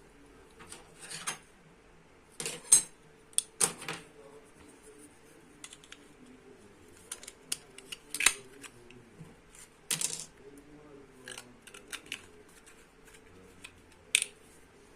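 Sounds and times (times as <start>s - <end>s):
clicks and taps of small parts: 13.1s - 14.4s.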